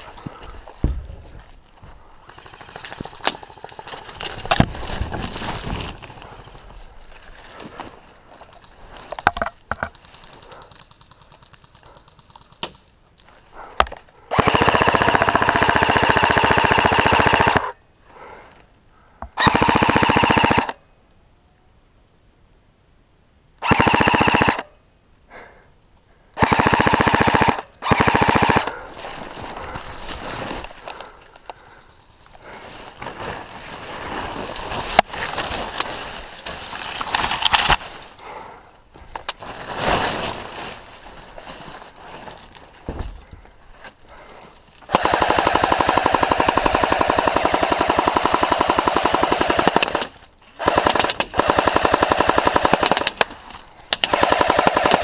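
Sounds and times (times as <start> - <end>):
airsoft gun firing bursts: 14.3 - 17.7, 19.4 - 20.8, 23.6 - 24.7, 26.4 - 28.8, 44.9 - 53.3, 53.9 - 55.0.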